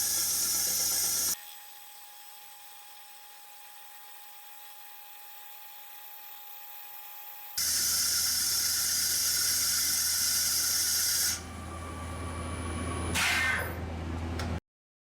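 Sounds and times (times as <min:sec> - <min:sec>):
machine tool cutting cast iron: 0:00.0 - 0:01.4, 0:07.6 - 0:11.4
machine low hum: 0:11.4 - 0:14.6.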